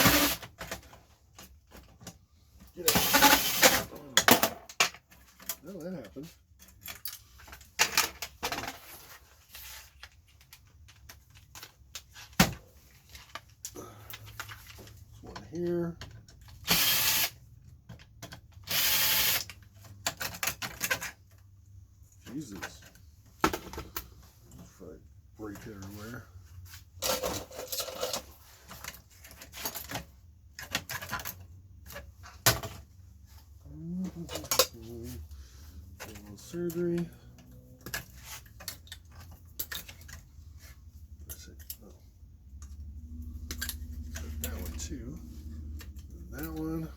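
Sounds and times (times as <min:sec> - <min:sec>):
plastic and metal parts clattering: 0:00.0 - 0:16.6, 0:19.2 - 0:24.8, 0:25.4 - 0:42.8
metal parts clicking and rattling: 0:02.8 - 0:08.8, 0:27.0 - 0:32.9, 0:36.0 - 0:42.0.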